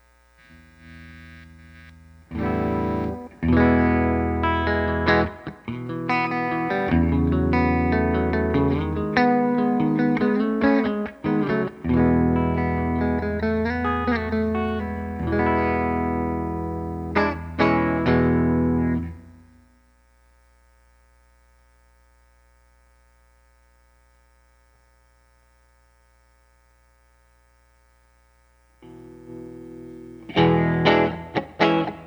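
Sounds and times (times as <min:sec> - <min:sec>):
faint steady hum: 0:00.0 - 0:32.0
electric guitar strumming chords: 0:00.5 - 0:19.8, 0:28.8 - 0:32.0.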